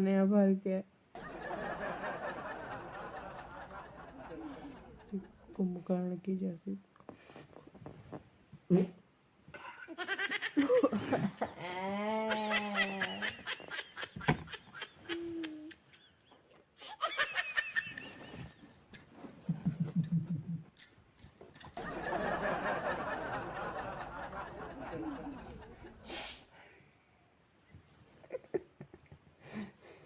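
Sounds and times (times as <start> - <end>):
person snickering: 9.6 - 18.7, 19.3 - 20.7.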